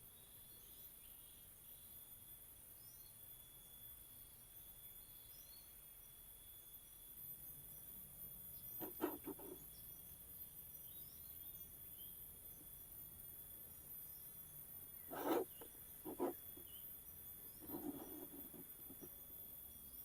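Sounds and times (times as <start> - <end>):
insect drone: 0.0 - 20.0
faint bird chirps: 7.2 - 20.0.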